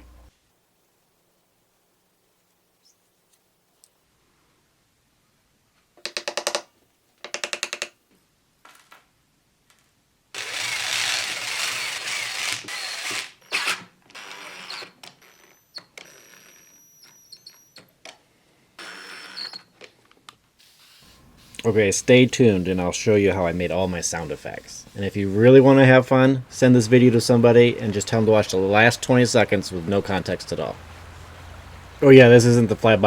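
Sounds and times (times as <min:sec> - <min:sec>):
scattered clicks and taps: 0:06.0 - 0:08.0
small power tool clicking: 0:10.4 - 0:14.9.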